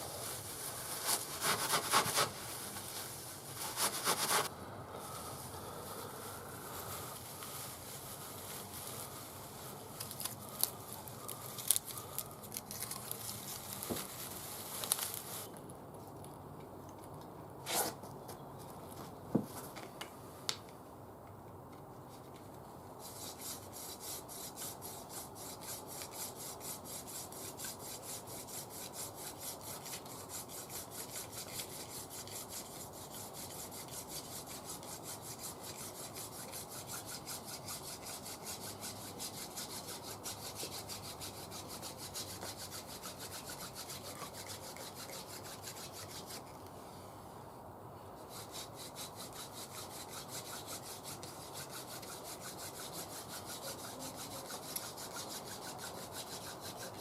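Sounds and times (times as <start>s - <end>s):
rhythmic rasping rub on wood: 1.0s - 2.4s, 3.6s - 4.5s, 23.0s - 46.5s, 48.2s - 57.0s.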